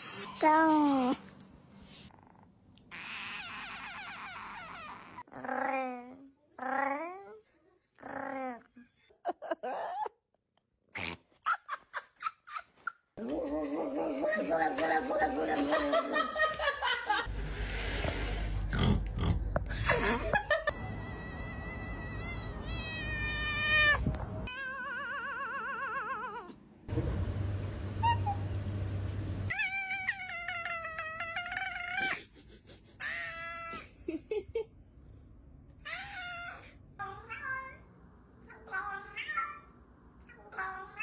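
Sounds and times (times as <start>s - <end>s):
cats meowing and yowling: 20.9s - 26.6s, 29.5s - 32.2s.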